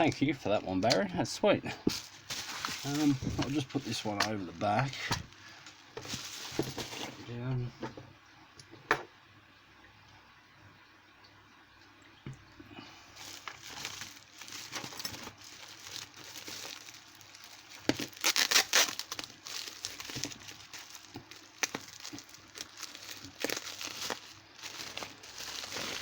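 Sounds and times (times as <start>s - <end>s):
packaging crinkling and crumpling: 1.9s - 7.3s, 13.1s - 26.0s.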